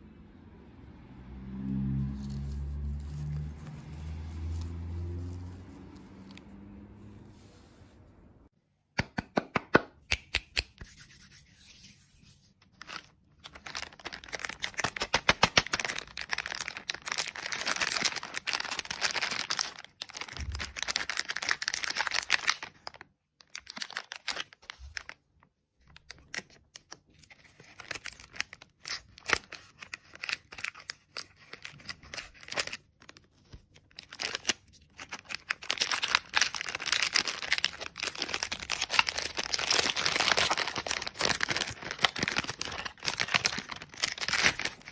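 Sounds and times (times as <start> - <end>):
plastic packaging crinkling and tearing: 12.7 - 25.2, 25.8 - 44.9.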